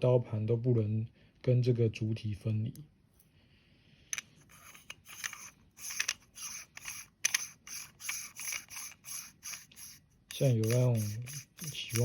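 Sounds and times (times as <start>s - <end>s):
coffee grinder metal scraping: 4.4s - 12.0s.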